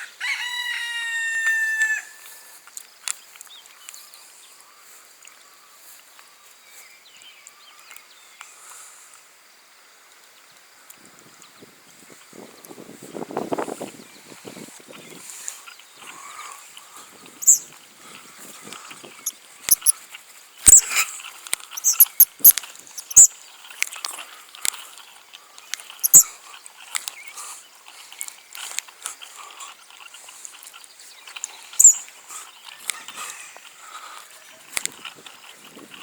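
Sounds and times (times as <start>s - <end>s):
bird chirping and clicking: 17.4s - 17.7s, 19.2s - 19.9s, 20.6s - 27.4s, 28.1s - 28.9s, 29.9s - 33.2s.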